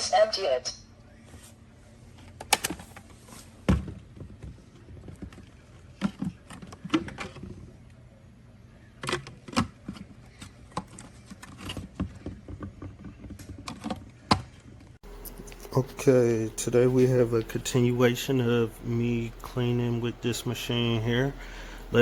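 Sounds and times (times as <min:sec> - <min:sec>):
faint low hum: 0:00.0 - 0:22.0
plastic parts clicking and knocking: 0:03.7 - 0:07.6, 0:09.0 - 0:14.7.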